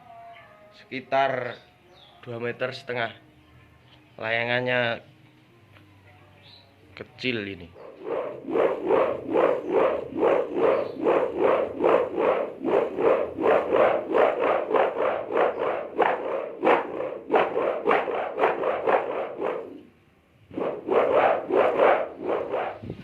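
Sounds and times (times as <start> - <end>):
kite hummer buzzing in wind: 7.8 - 23.0.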